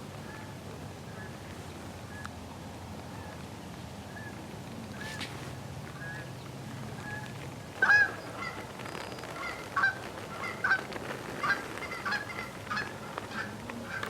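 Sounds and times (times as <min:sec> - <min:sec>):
geese honking: 0:07.0 - 0:08.6, 0:09.3 - 0:14.0
geese clucking: 0:07.0 - 0:14.0.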